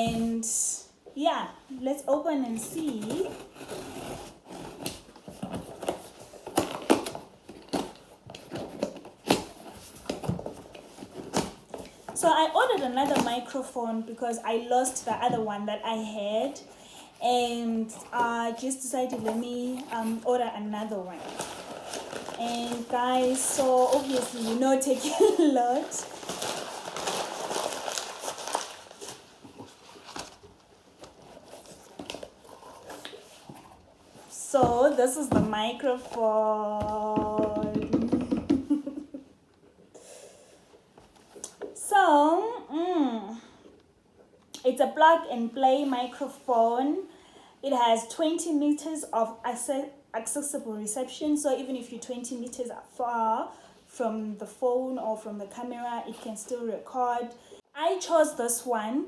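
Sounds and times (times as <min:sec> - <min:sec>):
packaging being opened by hand: 0:21.2 - 0:33.6.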